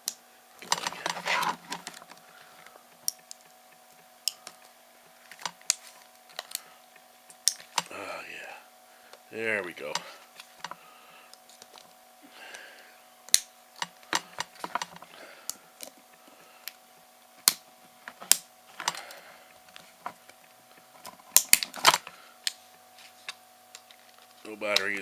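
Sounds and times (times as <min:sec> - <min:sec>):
plastic clicking and cracking: 0:00.0 - 0:02.2, 0:05.3 - 0:06.7, 0:13.3 - 0:16.0, 0:21.0 - 0:22.6
faint steady hum: 0:00.0 - 0:25.0
knife scraping plastic: 0:00.6 - 0:02.0.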